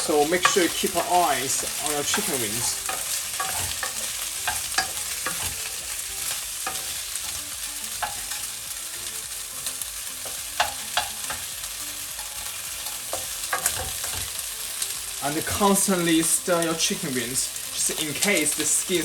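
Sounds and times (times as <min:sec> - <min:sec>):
utensil scraping and knocking pan: 0:00.0 - 0:08.5
chicken wings sizzling in oil: 0:00.0 - 0:19.0.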